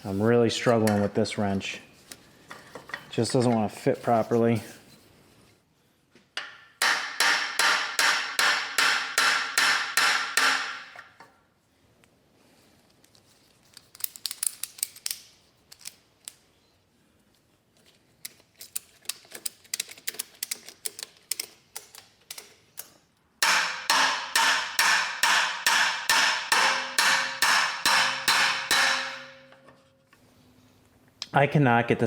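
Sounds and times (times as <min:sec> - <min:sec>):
hammer striking metal: 0:06.4 - 0:11.0, 0:23.4 - 0:29.7.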